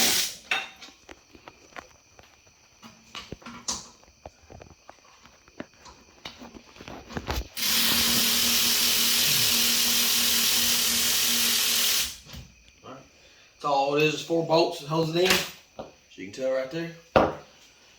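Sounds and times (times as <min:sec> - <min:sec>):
electric ratchet motor running: 0:00.0 - 0:00.4, 0:07.6 - 0:12.2.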